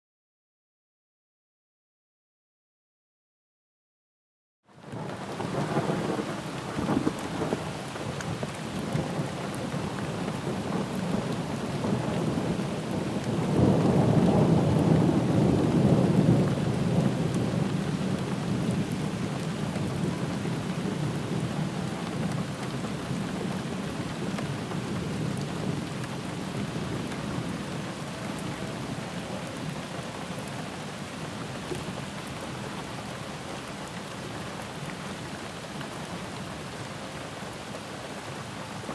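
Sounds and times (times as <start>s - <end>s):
steady rain falling: 4.7s - 38.9s
thunder rumbling: 10.4s - 19.2s.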